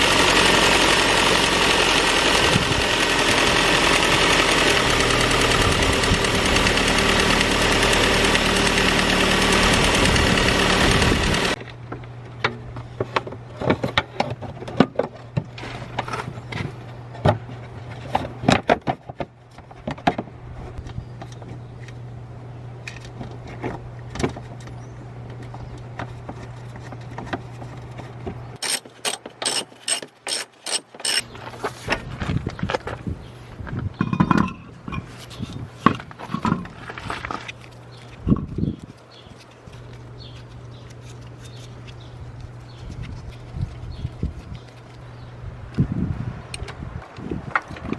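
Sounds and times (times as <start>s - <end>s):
hand tools clicking and knocking: 28.6s - 31.3s.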